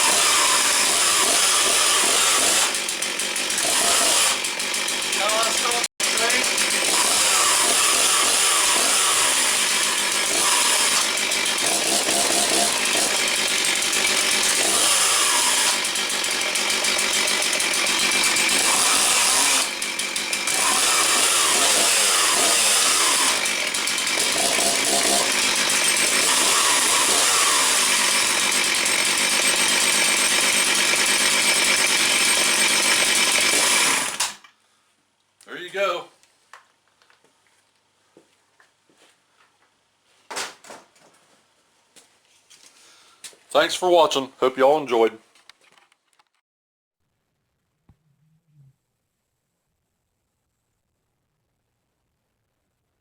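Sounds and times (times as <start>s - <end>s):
chainsaw revving: 0.0s - 34.4s.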